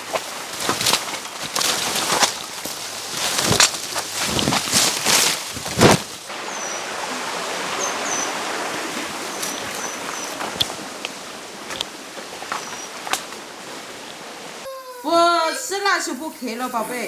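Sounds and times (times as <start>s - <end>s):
loud rustles: 0.0s - 14.7s
stream rushing: 0.0s - 14.7s
small bird chirping: 3.2s - 14.4s.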